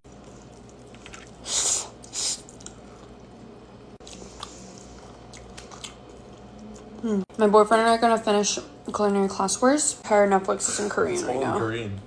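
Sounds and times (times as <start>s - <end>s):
wet chewing and biting: 4.0s - 7.0s.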